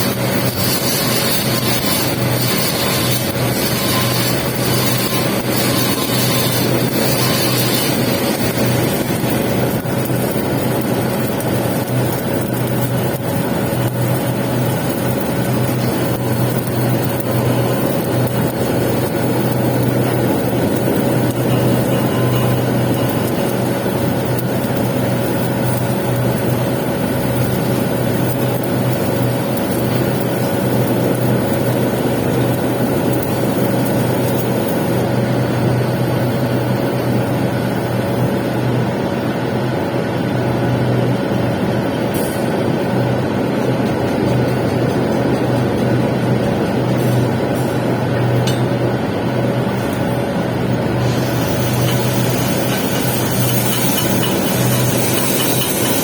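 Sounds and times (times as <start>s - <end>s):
welding hiss: 0.0s - 37.2s, 50.8s - 56.0s
electrical hum: 45.6s - 56.0s.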